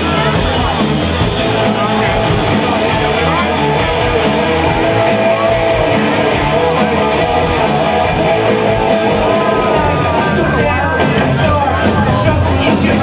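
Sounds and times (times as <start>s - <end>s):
drums keeping a steady beat: 0.0s - 13.0s
electric guitar: 0.0s - 13.0s.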